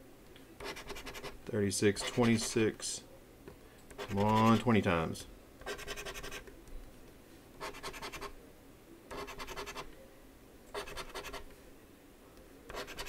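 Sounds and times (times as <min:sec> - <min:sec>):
lottery ticket being scratched: 0:00.6 - 0:02.7, 0:03.9 - 0:04.8, 0:05.6 - 0:06.5, 0:07.6 - 0:08.4, 0:09.1 - 0:09.9, 0:10.7 - 0:11.5, 0:12.7 - 0:13.0.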